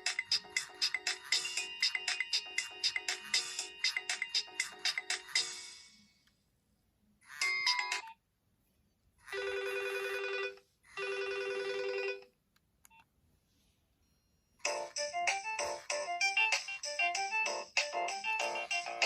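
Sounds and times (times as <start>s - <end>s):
phone ringtone melody: 0.0s - 4.7s, 9.3s - 12.3s, 14.6s - 19.0s.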